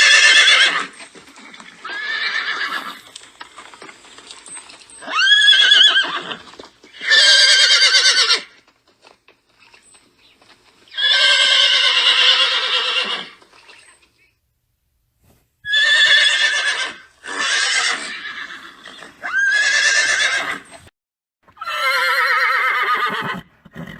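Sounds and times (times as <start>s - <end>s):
horse whinnying: 0.0s - 3.8s, 4.4s - 8.6s, 10.9s - 13.9s, 15.6s - 20.9s, 21.5s - 23.9s.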